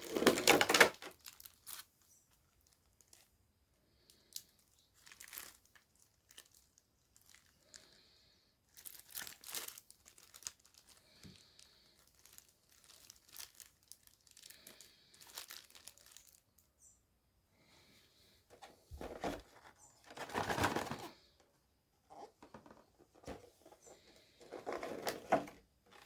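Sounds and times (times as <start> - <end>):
wrapping crinkling and tearing: 0.0 - 3.3, 4.0 - 8.1, 8.7 - 16.6, 22.5 - 26.0.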